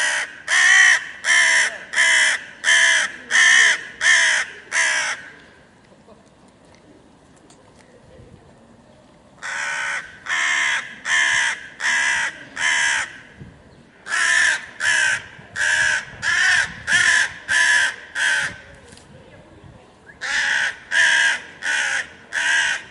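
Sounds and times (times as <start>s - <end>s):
crow cawing: 0.0s - 5.3s, 9.4s - 13.3s, 14.1s - 18.6s, 20.2s - 22.9s.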